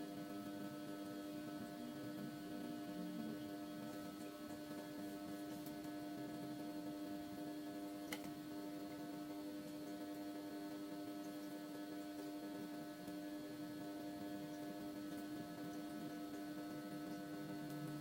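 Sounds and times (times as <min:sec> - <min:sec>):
electrical hum: 0:00.0 - 0:18.0.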